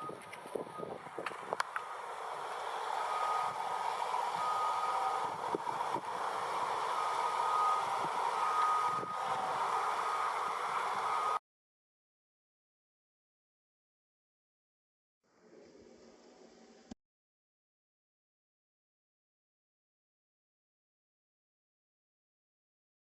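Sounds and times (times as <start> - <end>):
reversing alarm beeping: 0.0 - 1.0, 2.9 - 11.4
machinery rumble: 0.0 - 11.4.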